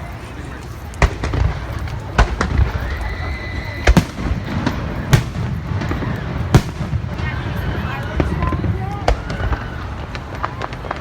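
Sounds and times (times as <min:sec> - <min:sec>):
fireworks bangs: 0:01.0 - 0:11.0
high firework whistle: 0:02.7 - 0:08.2.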